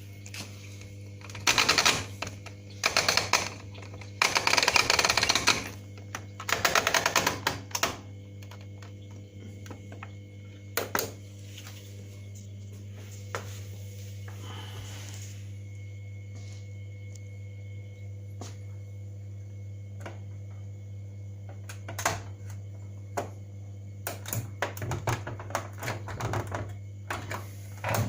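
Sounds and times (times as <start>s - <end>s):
washing machine humming: 0.0s - 28.0s
rapid rattling clicks: 1.2s - 9.0s.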